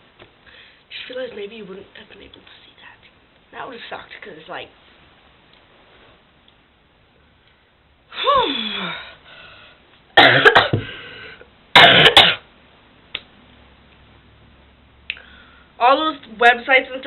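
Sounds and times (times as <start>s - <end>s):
person coughing hard: 10.2s - 11.1s, 11.8s - 12.4s.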